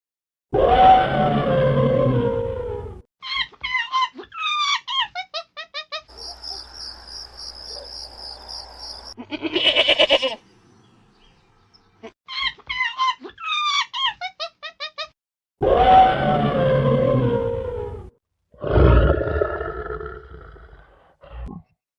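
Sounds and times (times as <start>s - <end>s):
loud pulsing animal call: 0.6s - 3.0s, 15.6s - 19.8s
animal chirps: 6.1s - 9.2s.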